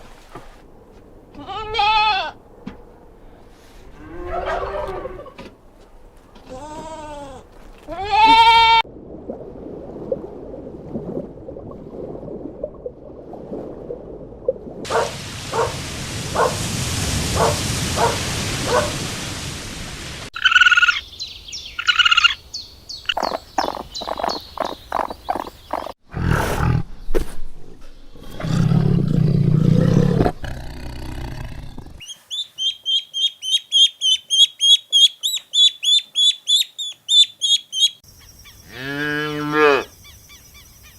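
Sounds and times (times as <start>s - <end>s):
animal bleating: 1.4s - 2.4s, 6.5s - 8.8s.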